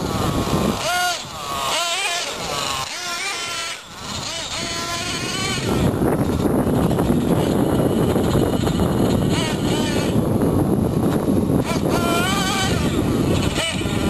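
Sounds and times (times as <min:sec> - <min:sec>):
small nitro engine revving: 0:00.0 - 0:14.0.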